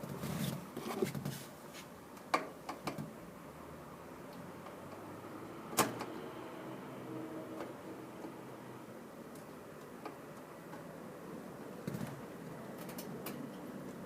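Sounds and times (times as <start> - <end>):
handling noise: 0.0 - 2.0.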